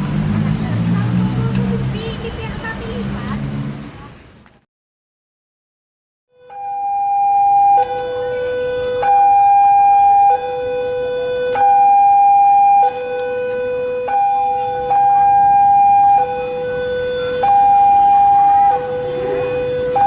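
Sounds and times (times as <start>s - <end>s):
two-tone warning siren: 6.3s - 20.0s.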